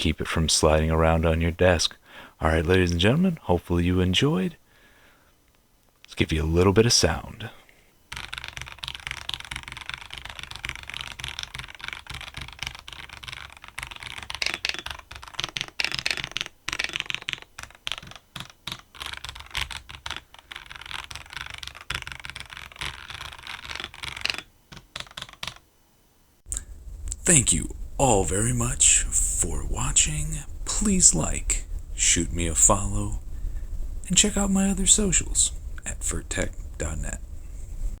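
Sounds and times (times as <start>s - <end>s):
mechanical keyboard typing: 8.1s - 25.6s.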